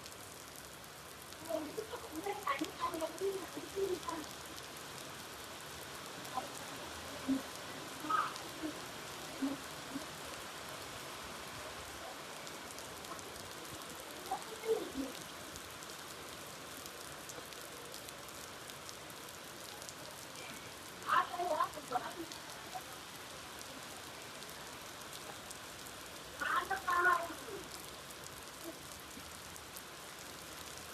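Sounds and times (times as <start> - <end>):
steady rain falling: 0.0 - 30.9.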